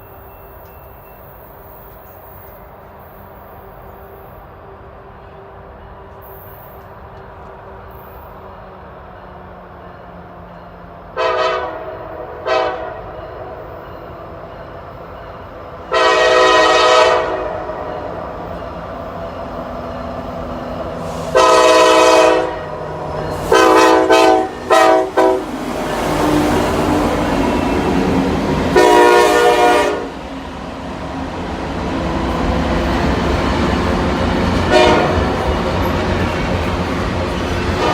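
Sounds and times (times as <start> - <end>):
train rumble: 0.0 - 37.9
train air horn blasts: 11.2 - 13.2, 15.8 - 17.9, 21.0 - 26.9, 28.7 - 30.2, 34.6 - 35.6, 37.7 - 37.9.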